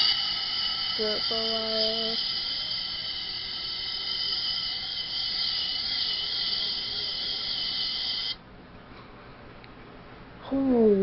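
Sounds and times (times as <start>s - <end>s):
compressed gas hissing from can: 0.0s - 8.4s.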